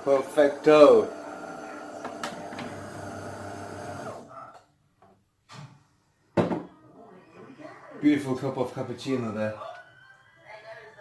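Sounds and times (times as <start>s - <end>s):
coffee machine humming: 0.0s - 4.3s.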